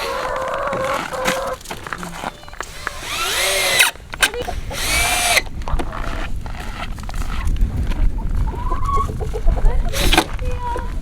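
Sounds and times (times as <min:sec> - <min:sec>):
power drill driving screws: 0:02.5 - 0:06.2, 0:09.9 - 0:10.3.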